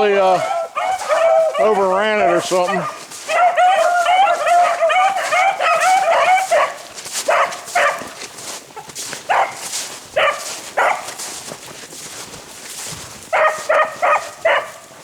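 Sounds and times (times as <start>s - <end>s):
beagles baying: 0.0s - 11.3s, 13.3s - 15.0s.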